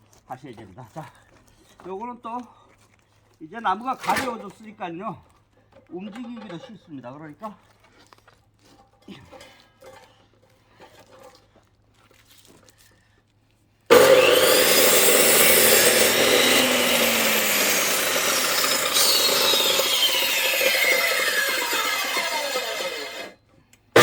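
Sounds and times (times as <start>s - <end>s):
power saw cutting log: 4.0s - 4.5s, 13.9s - 23.4s.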